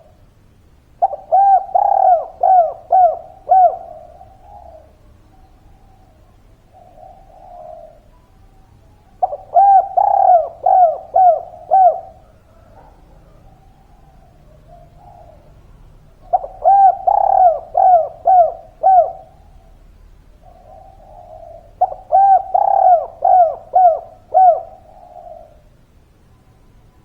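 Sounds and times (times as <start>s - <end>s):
dove cooing: 0.0s - 26.0s.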